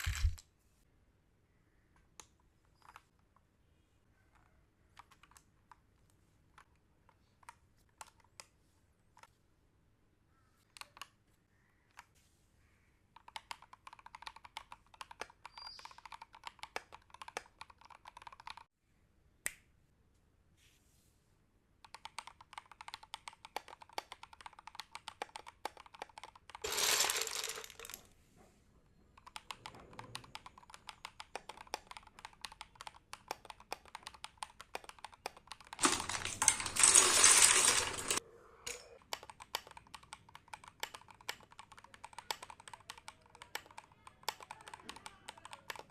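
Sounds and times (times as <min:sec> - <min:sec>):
typing on a keyboard: 0:04.3 - 0:05.8, 0:07.4 - 0:08.5, 0:13.1 - 0:18.7, 0:21.8 - 0:26.7, 0:29.2 - 0:38.2, 0:38.8 - 0:45.9.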